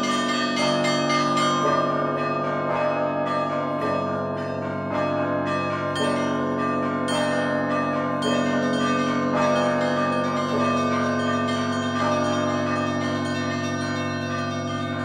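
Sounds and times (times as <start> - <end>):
small bells in quick rhythm: 0.0 - 2.4, 8.2 - 15.0
hum of large bells: 0.0 - 15.0.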